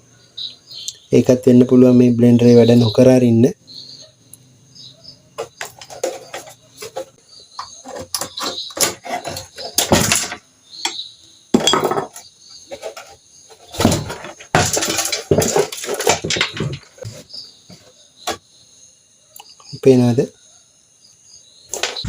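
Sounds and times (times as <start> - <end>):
small parts clicking and scraping: 5.4 - 11.0, 11.6 - 17.2, 21.7 - 22.0.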